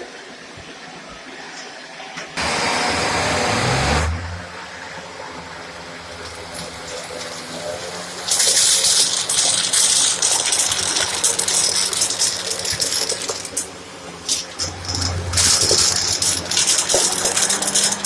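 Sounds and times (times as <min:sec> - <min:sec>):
vacuum cleaner humming: 0:02.4 - 0:09.6, 0:14.0 - 0:18.0.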